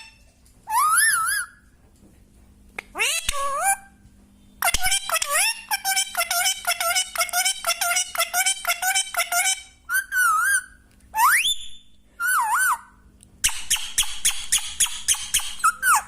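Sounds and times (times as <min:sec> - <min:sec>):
parrot whistling and chattering: 0:00.7 - 0:01.6, 0:04.6 - 0:16.0.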